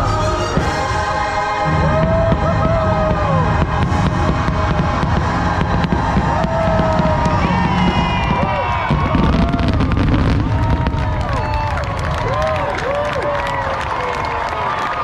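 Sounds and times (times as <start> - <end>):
music playing loudly: 0.0 - 8.5
fireworks booms and crackles: 1.8 - 15.0.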